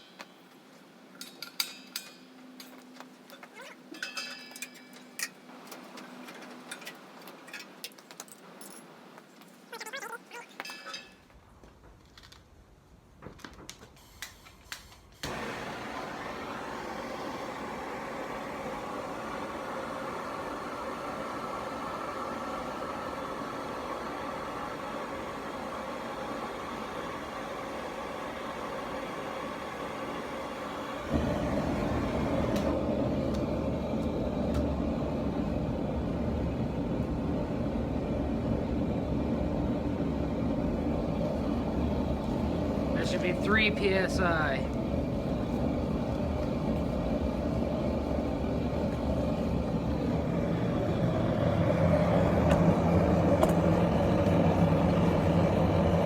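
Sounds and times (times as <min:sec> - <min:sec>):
forge burner roaring hiss: 0:12.8 - 0:56.0
burner ignition thump: 0:50.8 - 0:56.0.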